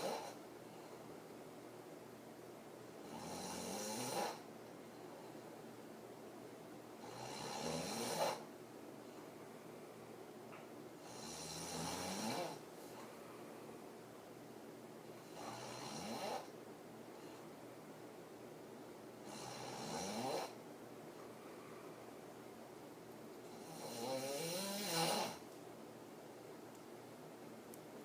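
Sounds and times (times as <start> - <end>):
woman snoring: 0.0 - 0.4, 3.0 - 4.4, 7.0 - 8.4, 11.0 - 12.6, 15.3 - 16.5, 19.3 - 20.6, 23.5 - 25.4.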